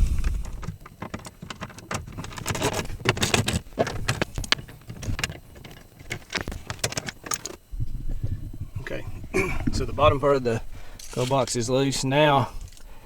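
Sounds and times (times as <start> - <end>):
hand tools clicking: 0.4 - 7.6
metallic clatter of screws: 0.8 - 7.6.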